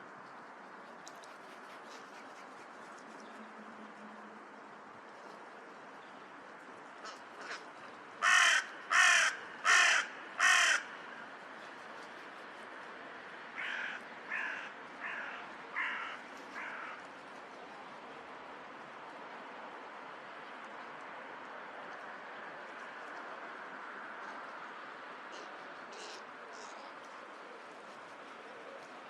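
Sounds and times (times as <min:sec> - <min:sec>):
crows cawing: 0:08.2 - 0:11.0, 0:13.5 - 0:17.0.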